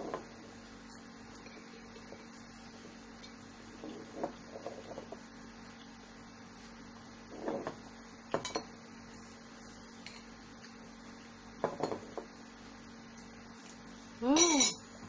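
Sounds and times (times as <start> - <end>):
faint steady hum: 0.0 - 15.0
cutlery clinking against a bowl: 14.4 - 14.8.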